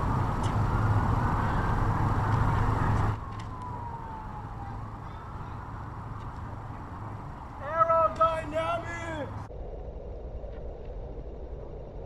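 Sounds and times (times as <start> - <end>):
distant siren wailing: 0.0 - 9.5
outdoor traffic: 0.0 - 12.0
wind noise: 0.0 - 12.0.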